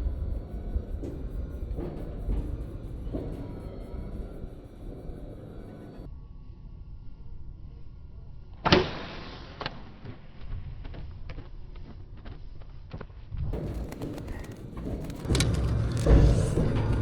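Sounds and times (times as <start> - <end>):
steady low rumble: 13.3 - 17.0.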